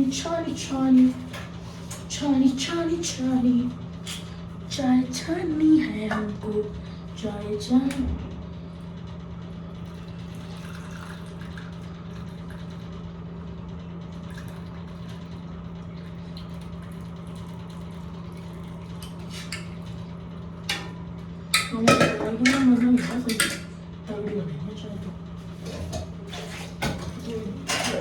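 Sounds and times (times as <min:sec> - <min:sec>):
steady low hum: 0:00.0 - 0:28.0
tea pouring into a cup: 0:09.8 - 0:12.8, 0:14.2 - 0:20.0.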